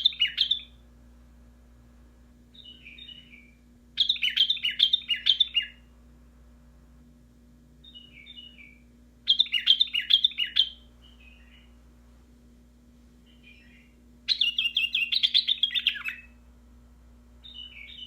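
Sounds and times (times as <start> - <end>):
bulbul singing: 0.0 - 0.8, 2.5 - 5.9, 7.8 - 11.8, 13.2 - 16.4, 17.4 - 18.0
faint low hum: 0.0 - 18.0.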